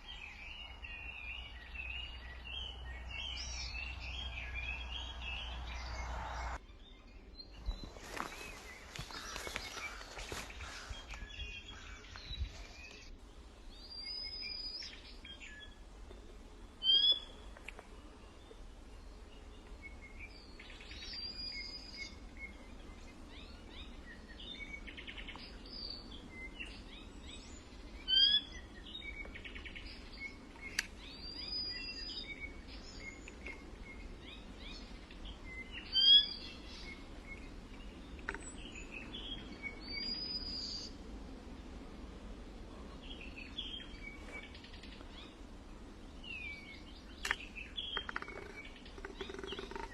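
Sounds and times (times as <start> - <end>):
birds chirping and calling: 7.6 - 13.1, 46.4 - 49.9
rustling noise: 7.7 - 11.4.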